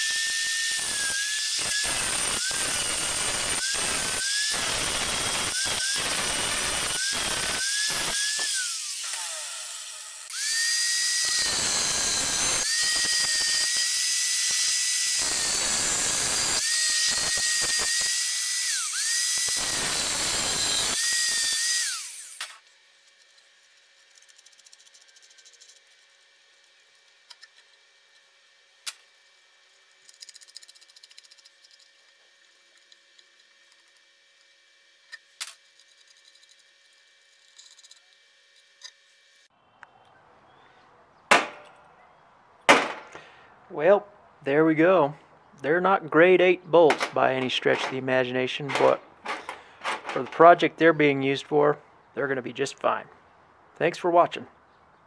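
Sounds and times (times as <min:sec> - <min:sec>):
power tool high whine: 0:00.0 - 0:29.8.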